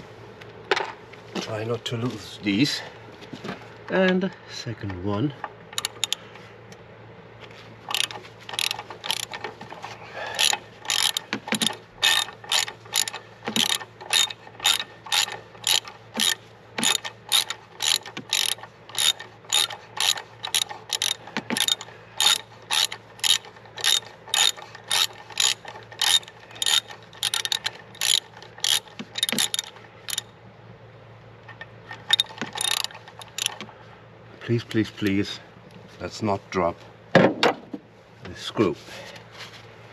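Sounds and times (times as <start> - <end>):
ratchet wrench clicking: 5.8 - 6.2, 7.9 - 9.5, 10.4 - 30.3, 31.6 - 33.7.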